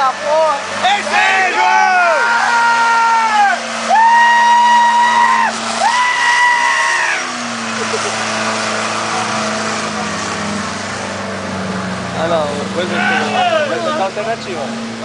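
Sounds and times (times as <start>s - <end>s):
off-road vehicle engine running: 0.0s - 15.0s
person shouting high-pitched: 12.9s - 14.0s.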